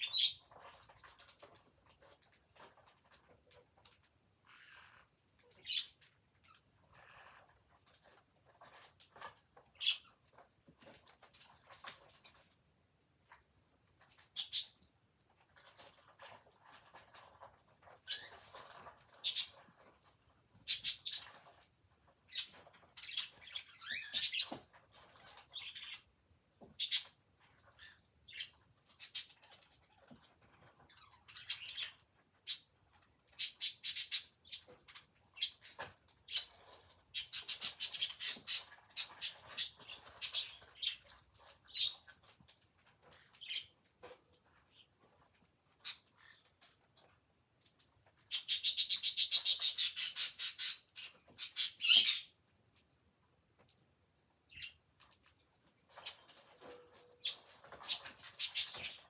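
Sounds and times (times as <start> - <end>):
budgerigar chirping and chattering: 33.4 - 34.4, 48.3 - 52.3.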